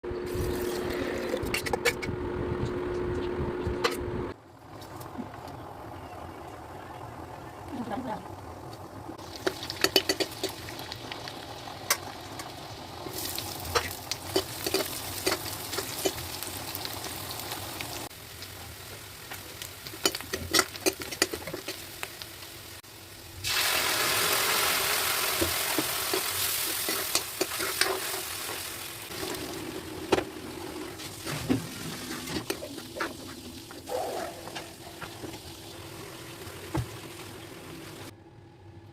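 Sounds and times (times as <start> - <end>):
food sizzling in hot fat: 7.0 - 38.1.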